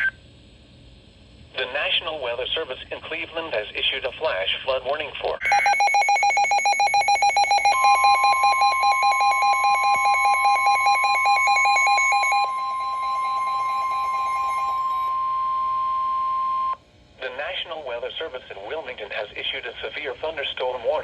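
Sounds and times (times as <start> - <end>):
rapid electronic alarm beeping: 5.4 - 16.8
steady single-pitch alarm tone: 5.4 - 16.8.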